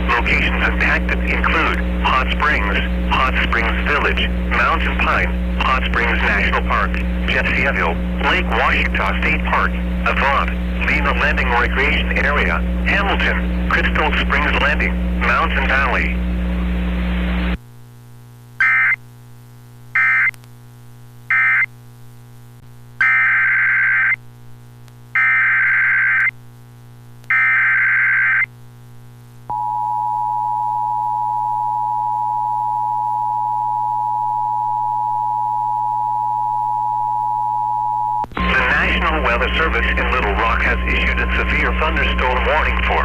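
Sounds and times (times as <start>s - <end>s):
low electrical hum: 0.0s - 43.0s
steady warning alarm tone: 25.2s - 26.3s, 27.3s - 28.4s.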